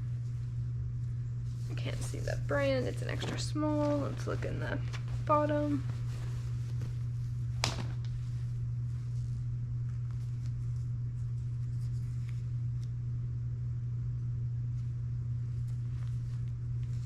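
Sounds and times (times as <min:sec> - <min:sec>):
steady low hum: 0:00.0 - 0:17.0
clothes rustling: 0:01.4 - 0:12.4.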